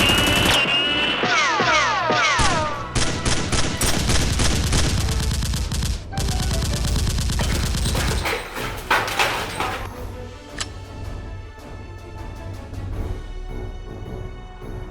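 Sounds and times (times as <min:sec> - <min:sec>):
rapid automatic gunfire: 0:03.0 - 0:09.8.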